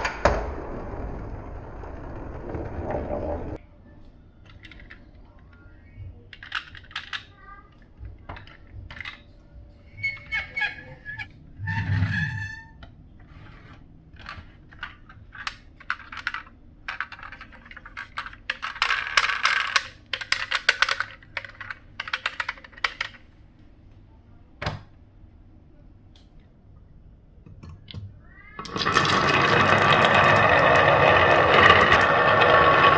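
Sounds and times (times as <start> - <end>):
marbles rattling through wooden run: 14.8 - 23.2, 28.6 - 32.9.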